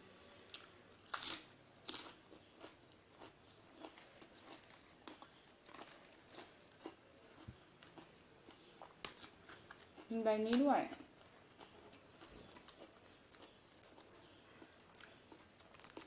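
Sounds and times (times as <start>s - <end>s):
crisp crunches: 0.5s - 2.8s, 11.6s - 16.0s
chewing clicks: 1.9s - 16.0s.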